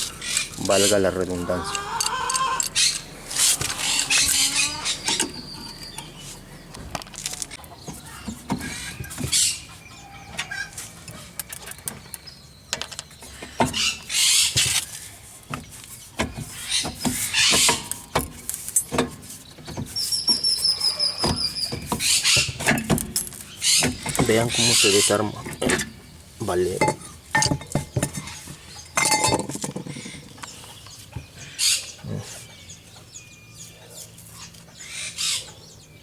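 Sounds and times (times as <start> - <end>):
bird chirping: 0.0 - 36.0
bearing puller metal clicks and scraping: 1.6 - 4.4, 5.0 - 6.1, 11.0 - 26.0.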